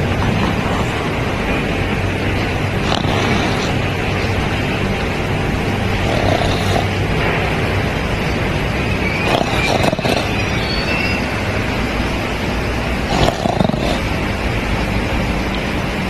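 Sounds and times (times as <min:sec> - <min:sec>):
dog snoring: 0:00.0 - 0:01.0, 0:02.8 - 0:03.8, 0:06.0 - 0:07.0, 0:09.2 - 0:10.6, 0:13.0 - 0:14.1
steady low hum: 0:00.0 - 0:16.0.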